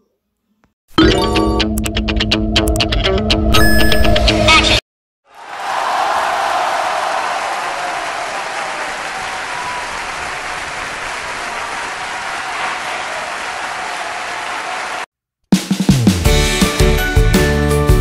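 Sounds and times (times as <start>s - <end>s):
audience applauding: 5.3s - 15.1s.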